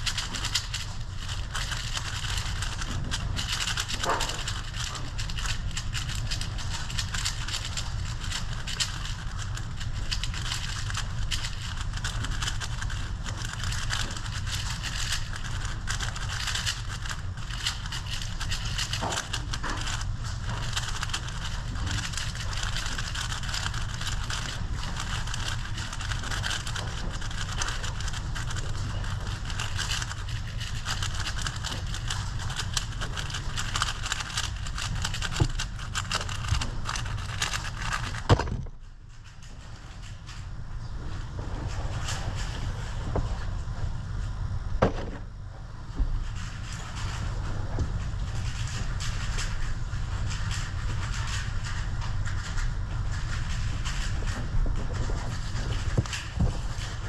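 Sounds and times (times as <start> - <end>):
puzzle cube clicking: 0.0 - 20.0, 20.6 - 38.7.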